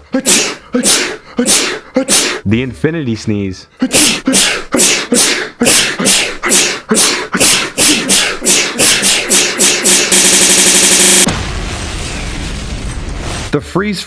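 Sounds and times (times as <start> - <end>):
person sneezing: 0.0 - 2.5, 3.8 - 10.4.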